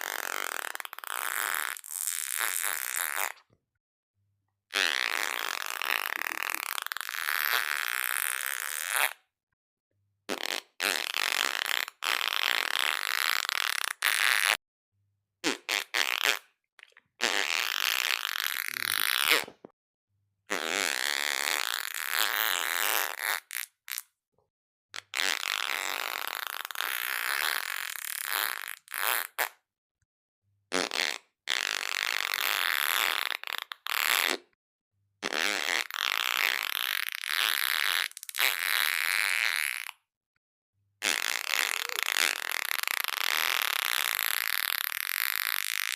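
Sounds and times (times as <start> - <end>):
fart sounds: 0.0 - 3.5, 4.7 - 9.2, 10.3 - 14.6, 15.4 - 19.7, 20.5 - 24.1, 25.0 - 29.6, 30.7 - 34.6, 35.2 - 40.0, 41.0 - 45.9.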